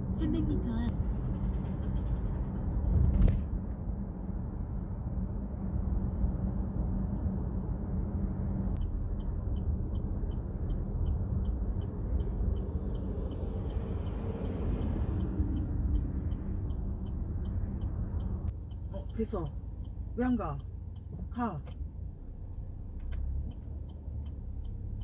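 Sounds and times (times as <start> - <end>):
road and engine rumble: 0.0 - 25.0
turn signal ticking: 8.6 - 25.0.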